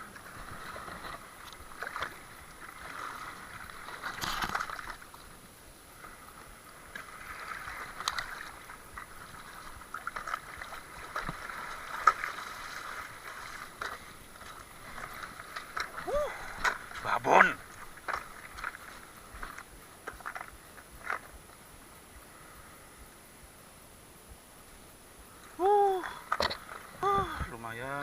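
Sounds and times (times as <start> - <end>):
water splashing and sloshing: 0.0 - 22.5, 25.3 - 28.0.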